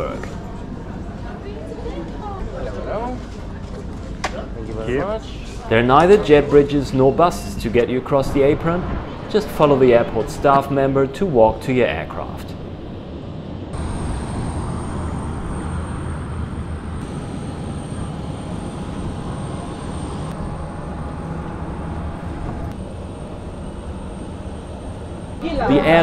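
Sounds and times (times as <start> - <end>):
aircraft engine noise: 6.0 - 26.0
high-pitched whine: 13.7 - 26.0.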